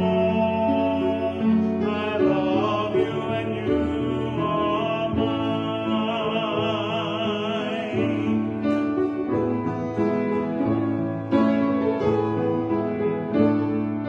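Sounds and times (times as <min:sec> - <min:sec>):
person singing with vibrato: 0:00.0 - 0:09.2
piano accompaniment: 0:00.0 - 0:14.0.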